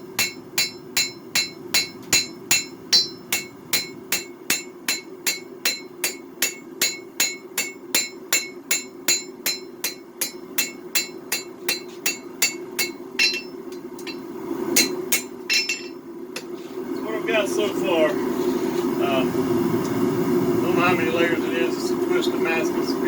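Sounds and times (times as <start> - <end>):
hammer striking blade on anvil: 0.0 - 14.2, 14.8 - 16.6
steady low hum: 0.0 - 23.0.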